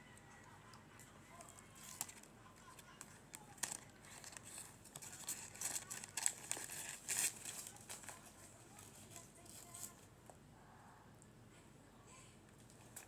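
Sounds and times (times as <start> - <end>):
food packaging crinkling: 1.3 - 10.1.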